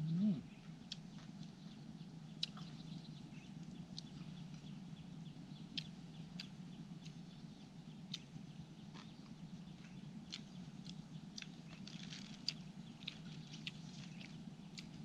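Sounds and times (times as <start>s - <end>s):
steady low hum: 0.0s - 15.0s
person chewing: 0.8s - 1.6s, 2.4s - 2.8s, 8.9s - 15.0s.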